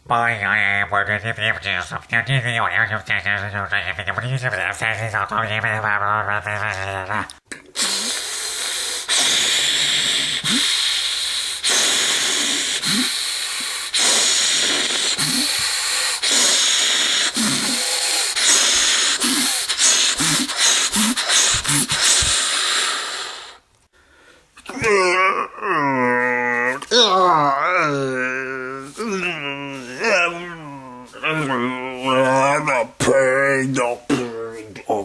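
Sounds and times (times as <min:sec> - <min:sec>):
person hissing through mouth: 0:06.5 - 0:23.7.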